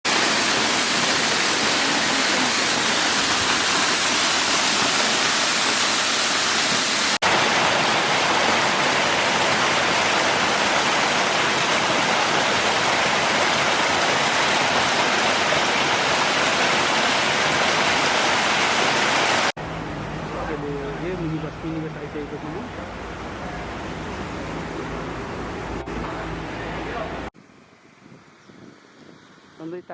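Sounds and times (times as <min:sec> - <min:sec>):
waterfall rushing roar: 0:00.1 - 0:19.5.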